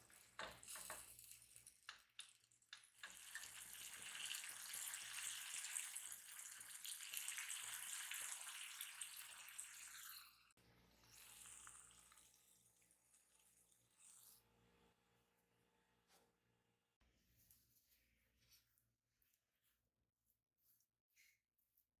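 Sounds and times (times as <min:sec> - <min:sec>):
water running from tap: 0:00.0 - 0:10.5, 0:11.1 - 0:12.7.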